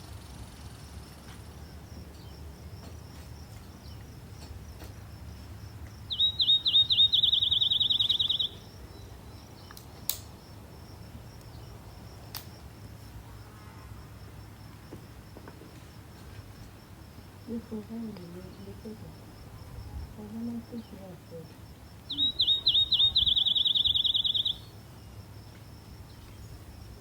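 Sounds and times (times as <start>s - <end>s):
faint insect drone: 0.0s - 27.0s
bird trilling: 6.1s - 8.7s, 22.1s - 24.7s
sharp clicks: 9.6s - 10.3s, 12.3s - 12.5s.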